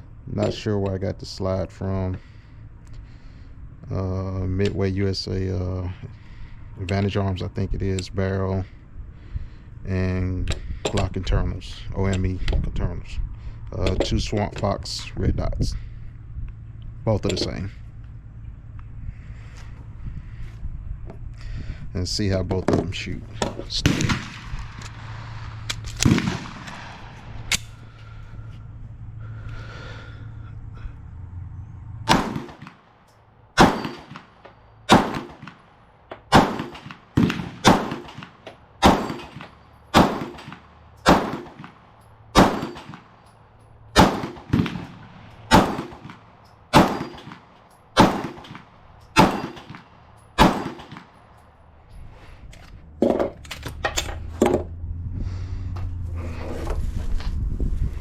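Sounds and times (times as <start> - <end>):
pistol shots: 23.4 - 27.8, 32.1 - 32.9, 33.6 - 35.7, 36.3 - 43.2, 43.9 - 51.3
quieter quick cracks: 23.4 - 27.9.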